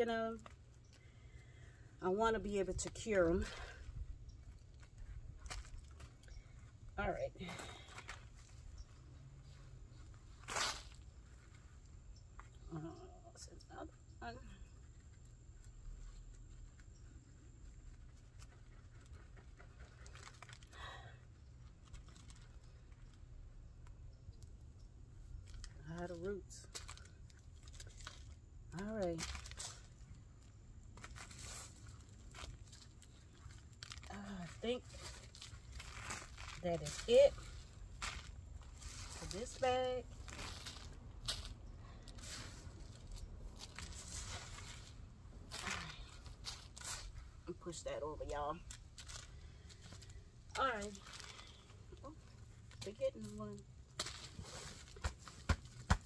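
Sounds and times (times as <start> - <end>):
hands rustling through soil: 25.4 - 56.0.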